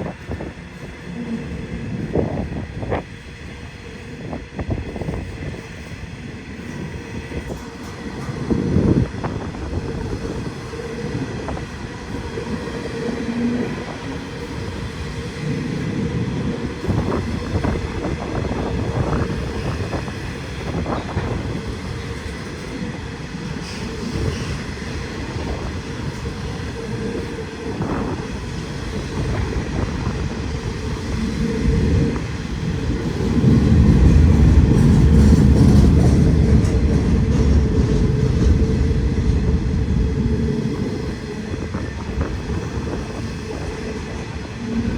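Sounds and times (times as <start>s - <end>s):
freight train rumble: 0.0s - 44.9s
wheels clacking over rail joints: 27.8s - 44.9s.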